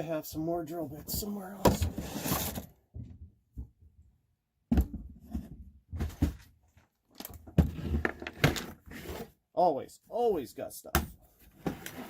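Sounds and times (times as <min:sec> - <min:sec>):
rummaging through drawers and tools: 0:00.3 - 0:04.0, 0:04.7 - 0:09.3, 0:11.0 - 0:12.0.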